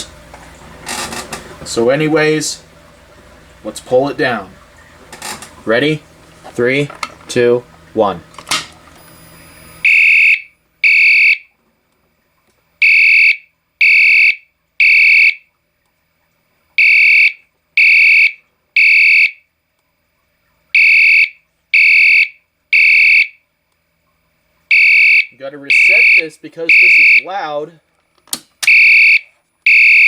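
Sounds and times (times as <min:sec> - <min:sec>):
fire alarm horn blasts: 0:09.0 - 0:11.6, 0:12.8 - 0:15.6, 0:16.7 - 0:19.5, 0:20.7 - 0:23.5, 0:24.7 - 0:27.6, 0:28.6 - 0:30.0.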